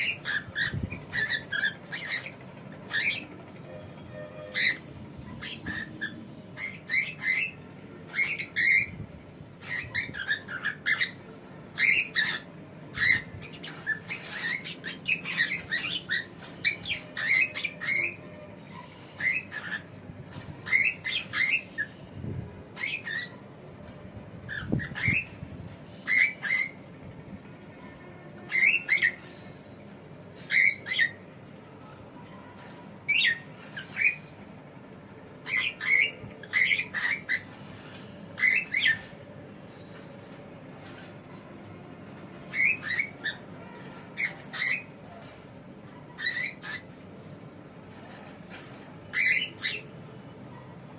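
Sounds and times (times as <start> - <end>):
cockatiel chirping and squawking: 0.0 - 2.3, 2.9 - 3.3, 4.5 - 9.0, 9.6 - 11.2, 11.8 - 21.9, 22.8 - 23.4, 24.5 - 25.4, 26.0 - 26.8, 28.5 - 29.3, 30.4 - 31.2, 32.4 - 34.3, 35.4 - 39.2, 42.5 - 43.5, 44.1 - 45.3, 45.9 - 46.9, 48.2 - 49.9.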